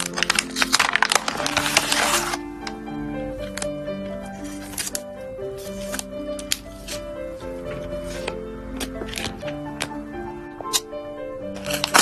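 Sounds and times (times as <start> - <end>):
plastic sleeves clicking and rustling: 0.0 - 2.8, 3.4 - 7.1, 7.7 - 10.0, 11.5 - 12.0
soft background music: 0.0 - 12.0.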